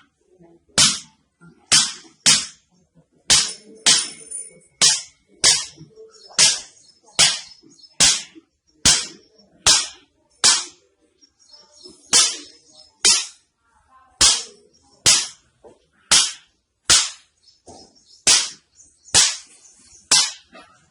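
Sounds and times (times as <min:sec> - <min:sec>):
sharp strikes: 0:06.4 - 0:10.8, 0:12.1 - 0:13.4, 0:14.2 - 0:15.4, 0:16.1 - 0:17.3, 0:18.2 - 0:19.5, 0:20.1 - 0:20.6.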